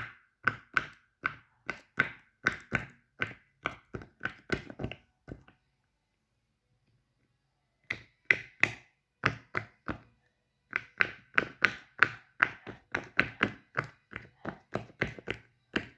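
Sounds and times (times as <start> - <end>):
fidget toy tapping: 0.0 - 5.5, 10.7 - 15.9.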